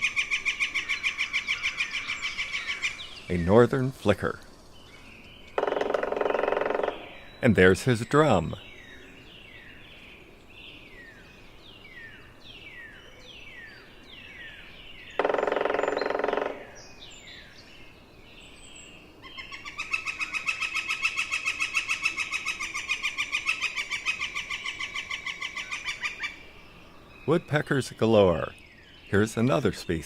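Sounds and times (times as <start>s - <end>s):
woodpecker drumming on wood: 5.4s - 7.3s, 15.2s - 16.8s.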